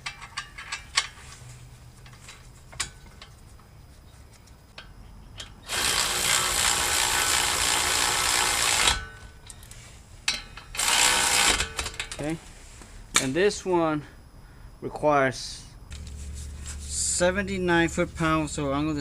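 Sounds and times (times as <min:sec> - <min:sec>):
ratchet turning: 0:05.6 - 0:09.0, 0:10.8 - 0:11.7.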